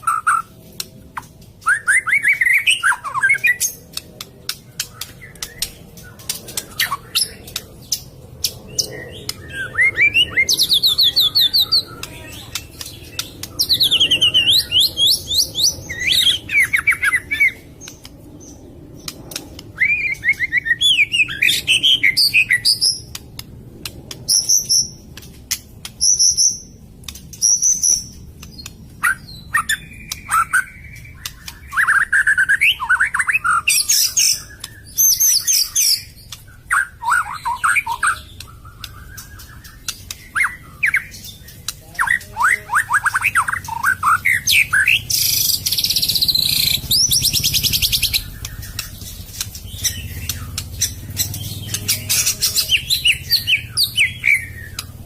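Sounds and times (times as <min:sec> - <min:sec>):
bird singing trills and whistles: 0:01.2 - 0:23.2, 0:23.8 - 0:55.0
sharp clicks: 0:17.8 - 0:18.3, 0:19.0 - 0:19.8, 0:43.5 - 0:53.3, 0:54.4 - 0:55.0.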